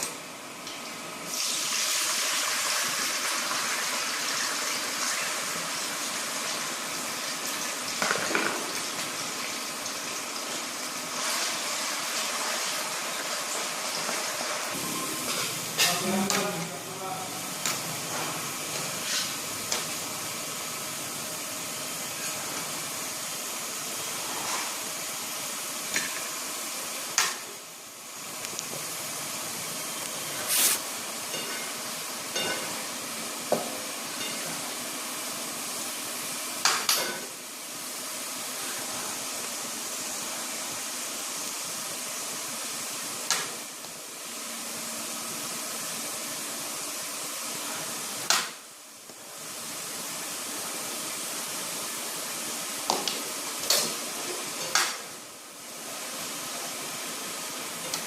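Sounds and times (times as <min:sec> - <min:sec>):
steady hiss: 0:26.4 - 0:32.9.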